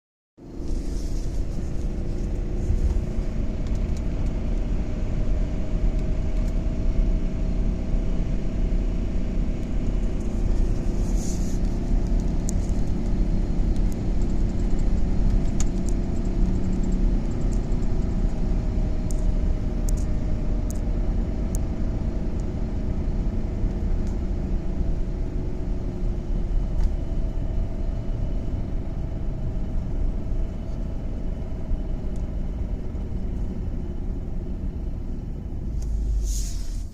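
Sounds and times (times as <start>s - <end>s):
car low rumble: 0.4s - 36.9s.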